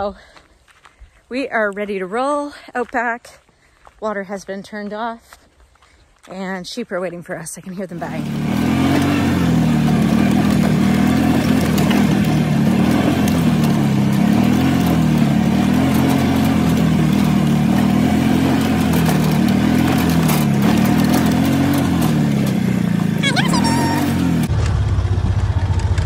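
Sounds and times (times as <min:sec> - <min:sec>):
farm vehicle engine running: 0:06.4 - 0:26.0.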